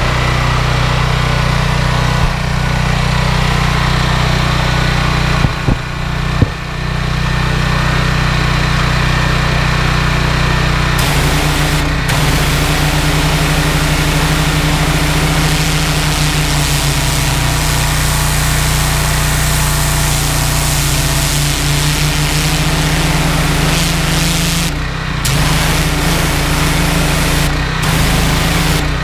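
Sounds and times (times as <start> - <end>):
petrol engine running: 9.7 - 29.0
pressure washer hiss: 11.0 - 29.0.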